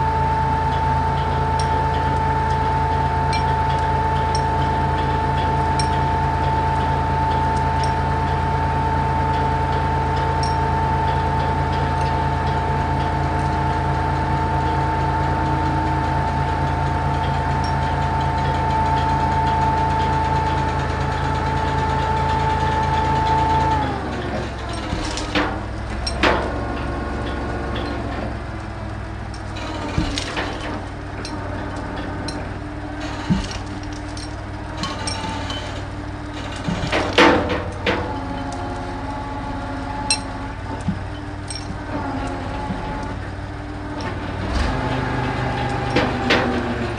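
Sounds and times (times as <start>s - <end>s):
crane engine and hydraulics whining: 0.0s - 46.9s
metal chains clanking: 1.2s - 8.4s, 10.1s - 13.6s, 16.0s - 20.2s, 21.6s - 28.4s, 29.3s - 43.3s.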